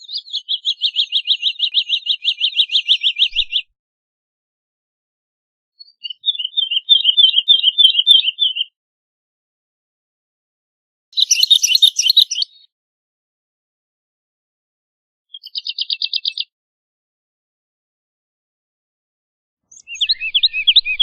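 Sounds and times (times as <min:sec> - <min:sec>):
bird singing: 0:00.0 - 0:03.6, 0:05.8 - 0:08.7, 0:11.2 - 0:12.7, 0:15.3 - 0:16.5, 0:19.7 - 0:21.0.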